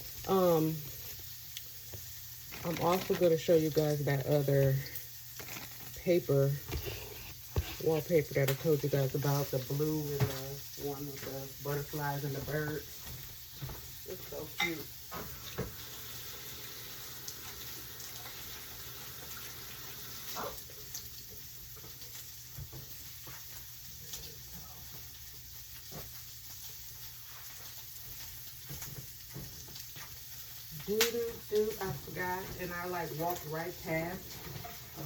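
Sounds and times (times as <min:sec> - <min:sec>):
food sizzling in a pan: 0:00.0 - 0:35.0.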